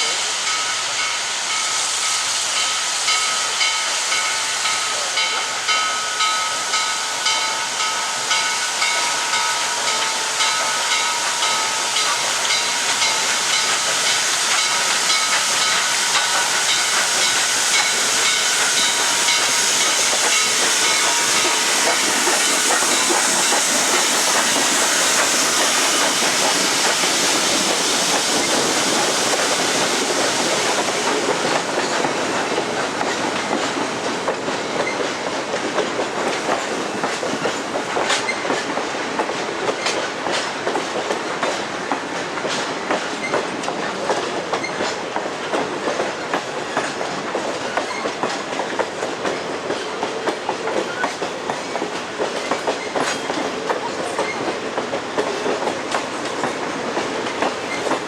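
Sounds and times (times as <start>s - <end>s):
high hiss: 0.0s - 39.1s
train rumble: 0.0s - 58.0s
train wheels clicking over rail joints: 0.0s - 58.0s.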